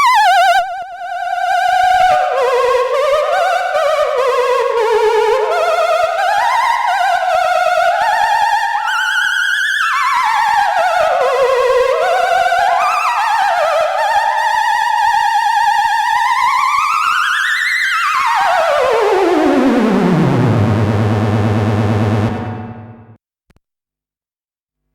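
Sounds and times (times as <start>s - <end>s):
warbling electronic tone: 18.9s - 23.2s.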